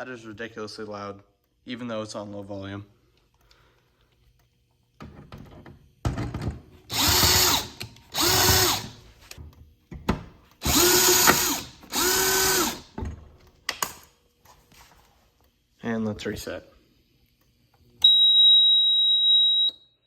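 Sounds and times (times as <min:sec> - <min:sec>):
fire alarm horn blasts: 0:18.0 - 0:20.0.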